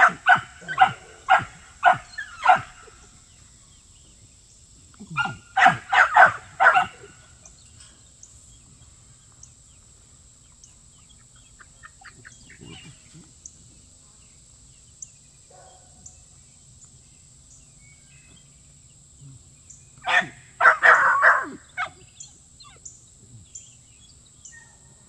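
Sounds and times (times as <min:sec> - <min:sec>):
dog barking: 0:00.0 - 0:03.0, 0:05.1 - 0:07.2, 0:15.5 - 0:16.0, 0:20.0 - 0:22.8.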